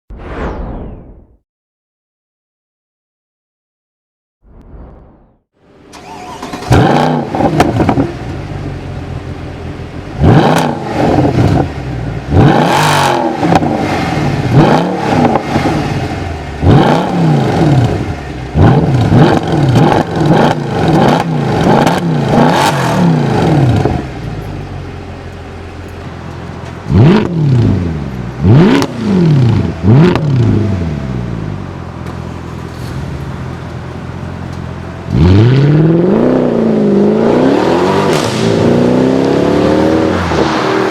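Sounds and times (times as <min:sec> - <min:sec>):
car engine revving: 0:05.9 - 0:24.2, 0:26.6 - 0:40.9.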